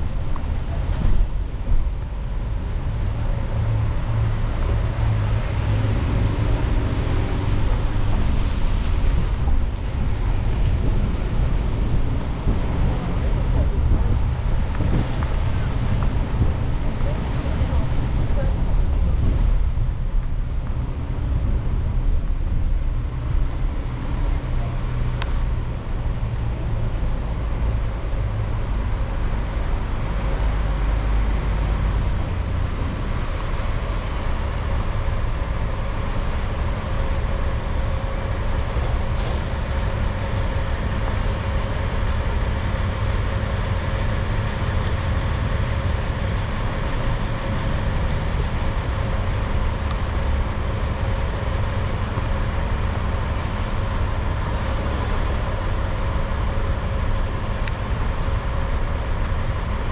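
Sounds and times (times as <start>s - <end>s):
car engine and road noise: 0.0s - 59.9s.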